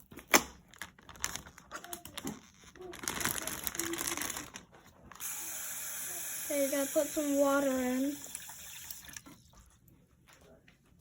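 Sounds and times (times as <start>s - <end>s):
plastic bag crinkling: 0.0s - 5.2s.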